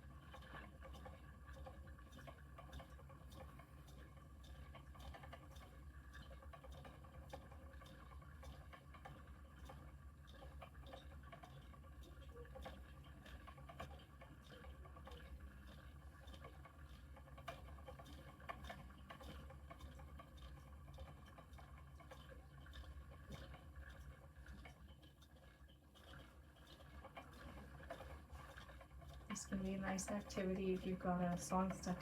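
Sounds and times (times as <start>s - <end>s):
low steady hum: 9.2s - 32.0s
spinning wheel ticking: 26.0s - 32.0s.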